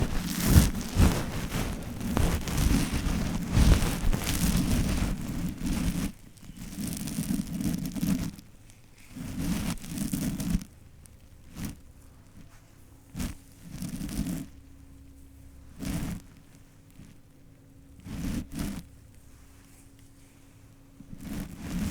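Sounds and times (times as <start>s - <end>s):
close rustling and brushing: 0.0s - 8.4s, 18.1s - 21.9s.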